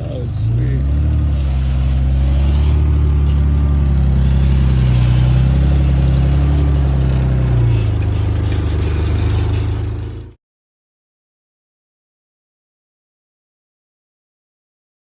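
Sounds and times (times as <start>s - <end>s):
car engine running under load: 0.0s - 10.4s.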